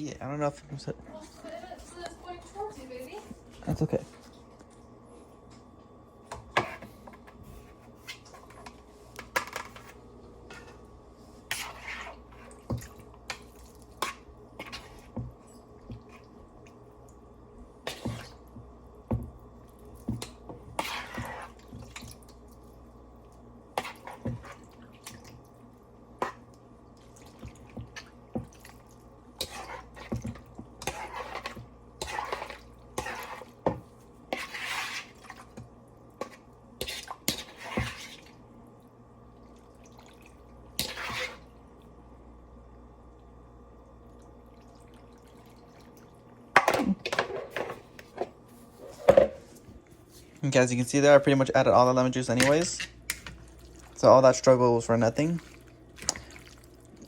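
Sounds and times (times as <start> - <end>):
juice dripping into bowl: 53.3 - 54.3, 55.1 - 57.0.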